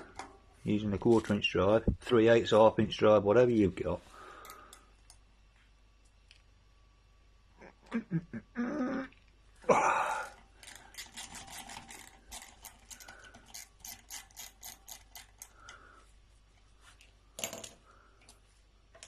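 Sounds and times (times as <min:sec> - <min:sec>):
ratchet wrench clicking: 0:11.9 - 0:15.6.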